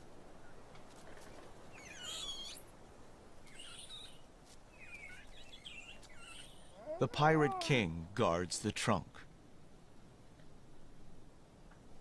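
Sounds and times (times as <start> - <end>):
high-pitched animal calls: 1.7 - 2.7, 3.5 - 4.2, 4.8 - 7.9.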